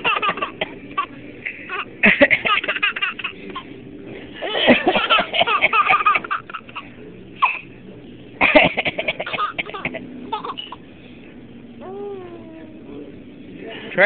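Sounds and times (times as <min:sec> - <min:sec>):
baby laughing: 0:00.0 - 0:01.1, 0:01.7 - 0:03.7, 0:04.4 - 0:07.6, 0:08.4 - 0:10.8.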